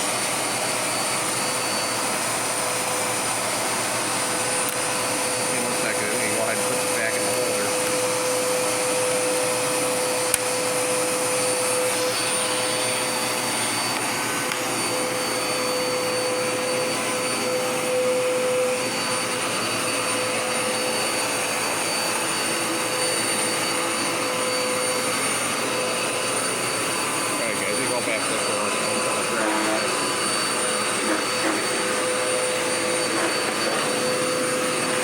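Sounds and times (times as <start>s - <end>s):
vacuum cleaner running: 0.0s - 35.0s.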